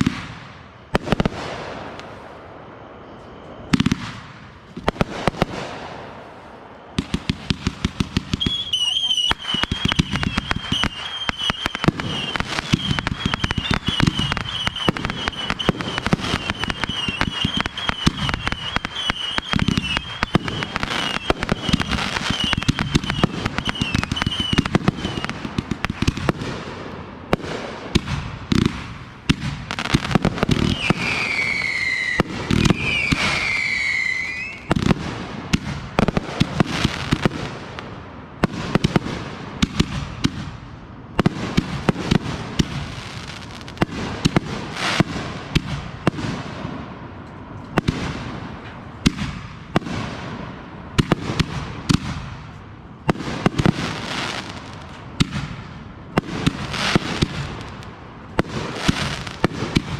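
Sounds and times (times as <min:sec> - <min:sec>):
fireworks crackling and banging: 0:00.0 - 0:59.9
falling firework whistles: 0:01.1 - 0:26.4, 0:29.3 - 0:35.7
warbling firework whistle: 0:01.8 - 0:07.4, 0:08.4 - 0:25.5, 0:30.0 - 0:34.8.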